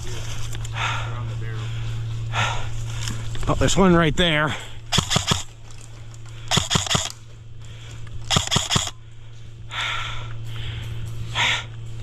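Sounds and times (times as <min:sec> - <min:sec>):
airsoft rifle bursts: 0:04.9 - 0:05.6, 0:06.5 - 0:07.2, 0:08.2 - 0:09.0.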